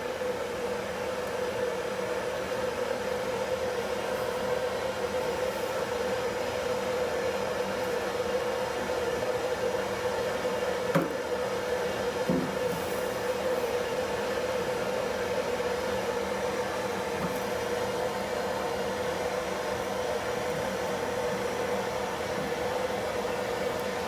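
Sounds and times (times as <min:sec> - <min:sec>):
tap on metal: 0:12.3 - 0:12.6
soldering torch hissing: 0:12.3 - 0:14.5.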